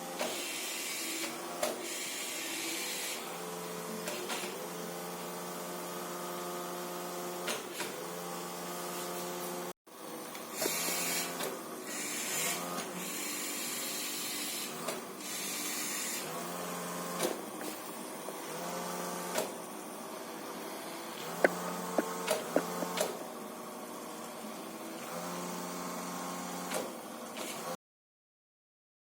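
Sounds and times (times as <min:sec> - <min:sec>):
small electric motors running: 0:00.2 - 0:27.8.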